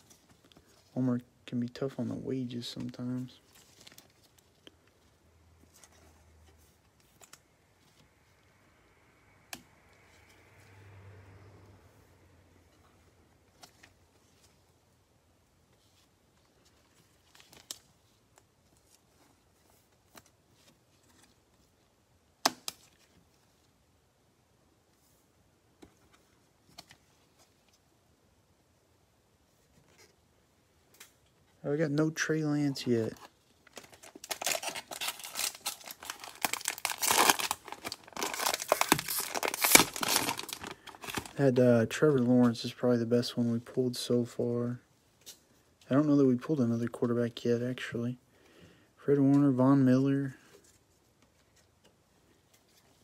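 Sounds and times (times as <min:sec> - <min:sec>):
cards rustling: 0:01.6 - 0:08.1, 0:15.7 - 0:21.8, 0:30.9 - 0:41.5
cellophane crinkling and tearing: 0:33.0 - 0:41.5.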